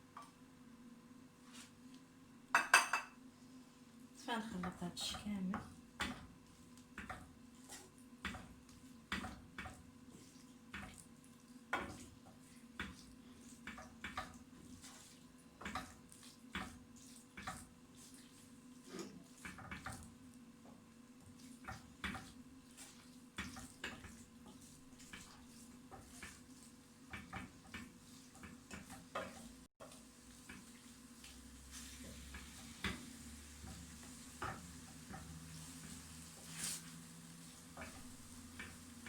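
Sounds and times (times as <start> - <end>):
spoon clinking and scraping pot: 2.6 - 3.2.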